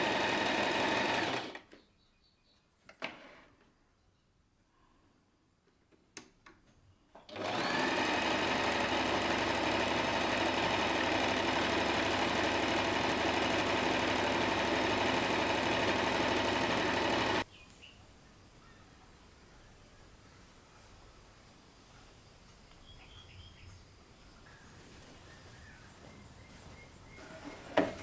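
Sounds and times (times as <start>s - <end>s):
electric sewing machine stitching: 0.0s - 1.6s, 7.3s - 17.4s.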